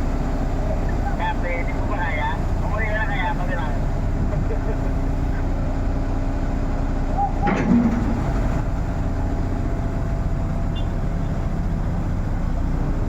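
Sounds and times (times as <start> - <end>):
diesel engine running: 0.0 - 13.0
metal clank: 7.4 - 8.2.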